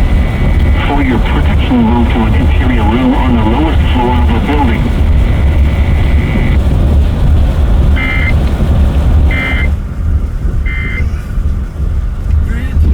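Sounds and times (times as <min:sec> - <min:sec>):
steady high tone: 0:00.0 - 0:06.6, 0:08.0 - 0:08.4, 0:09.3 - 0:09.8
buzzy electronic data bursts: 0:00.0 - 0:07.2, 0:07.9 - 0:08.4, 0:09.2 - 0:09.8
steady low rumble: 0:00.0 - 0:12.9.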